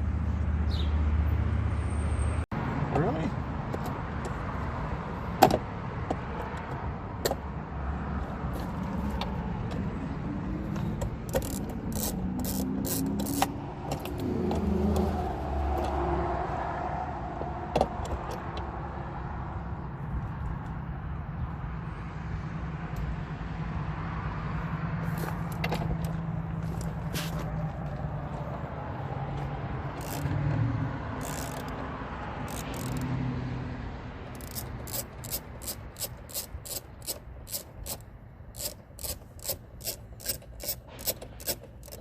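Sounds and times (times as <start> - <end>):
low engine hum: 6.6 - 36.3
vehicle passing: 7.6 - 37.1
hand tools clicking on metal: 11.0 - 15.1, 34.4 - 42.0.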